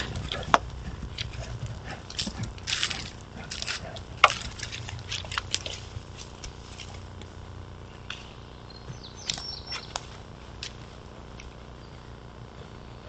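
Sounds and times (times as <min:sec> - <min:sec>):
low steady hum: 0:00.0 - 0:13.0
high bird chirp: 0:07.9 - 0:10.0.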